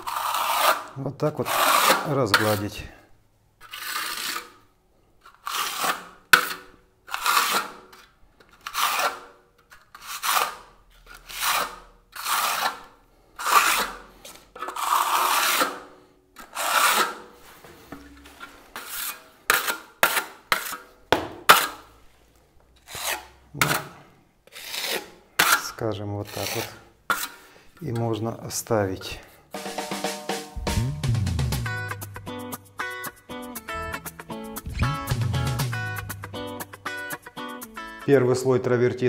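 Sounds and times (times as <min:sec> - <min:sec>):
steel blade scraping plaster: 0:00.0 - 0:02.8, 0:03.6 - 0:04.6, 0:05.2 - 0:21.9, 0:22.8 - 0:27.5.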